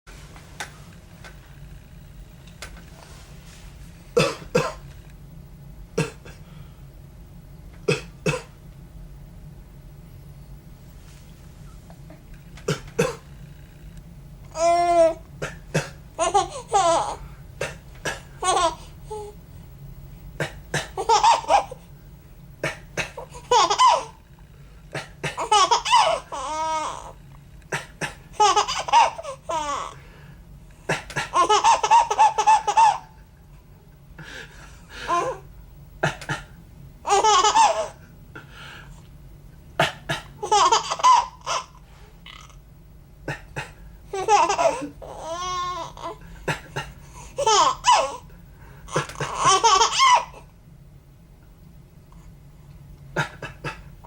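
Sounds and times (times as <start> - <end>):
man coughing: 4.2 - 4.8, 6.0 - 6.4, 7.9 - 8.5, 12.7 - 13.3, 15.4 - 16.0, 17.6 - 18.4, 25.0 - 25.5, 30.9 - 31.4, 36.0 - 36.6, 46.3 - 47.0, 53.1 - 53.9
baby giggling: 16.2 - 17.2, 18.4 - 19.3, 20.8 - 21.8, 22.7 - 24.2, 25.3 - 27.1, 27.8 - 30.0, 31.0 - 33.1, 37.1 - 38.0, 40.4 - 41.8, 44.1 - 48.2, 48.9 - 50.4.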